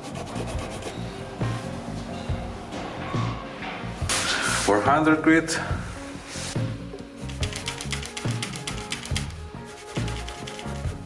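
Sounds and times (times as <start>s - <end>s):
background music with steady beat: 0.0s - 11.0s.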